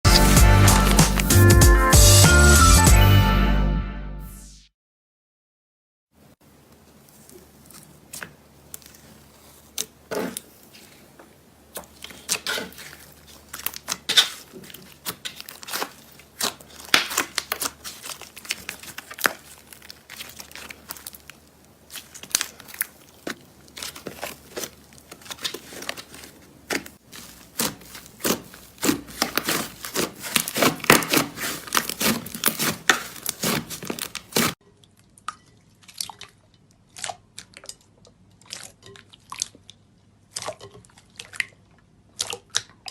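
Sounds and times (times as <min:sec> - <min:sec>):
slime crackling and popping: 0:11.7 - 0:34.6.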